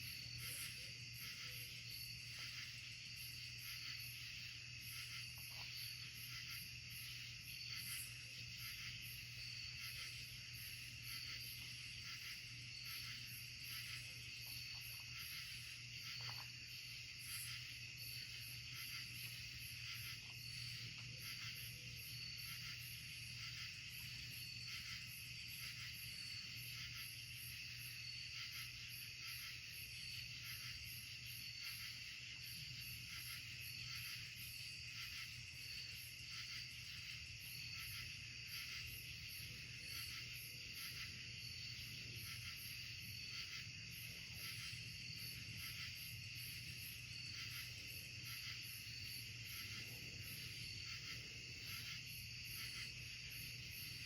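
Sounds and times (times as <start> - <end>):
insects trilling: 0.0 - 54.0.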